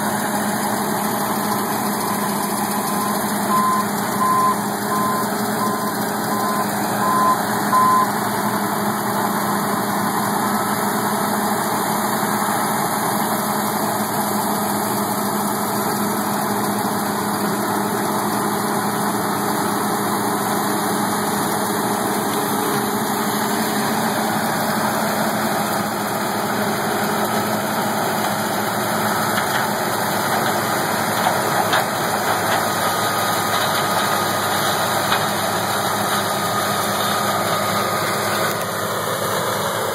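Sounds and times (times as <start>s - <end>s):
heavy machinery engine running: 0.0s - 39.9s
warning beeps: 2.9s - 8.2s.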